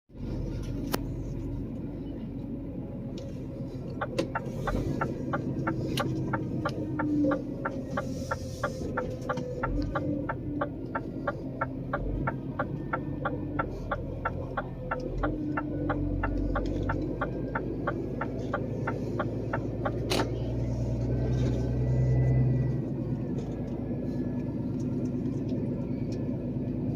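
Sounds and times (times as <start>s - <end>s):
steady low hum: 0.2s - 26.9s
rapid mechanical ticking: 3.9s - 20.1s.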